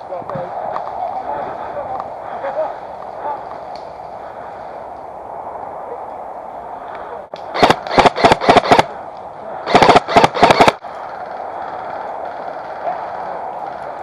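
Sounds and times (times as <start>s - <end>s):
airsoft gun firing bursts: 7.6s - 8.9s, 9.7s - 10.8s.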